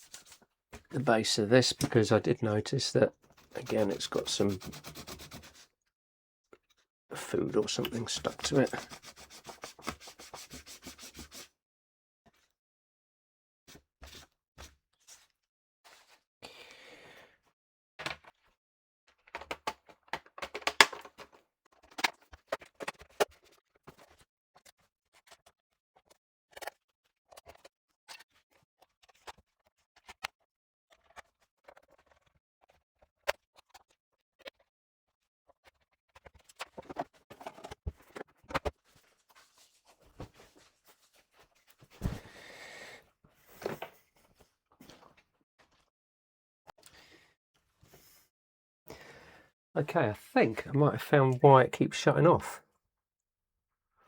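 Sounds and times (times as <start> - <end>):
rubbing scrape on plastic: 3.3 - 5.7, 7.6 - 11.5
clicks and taps on plastic casing: 19.4 - 21.3.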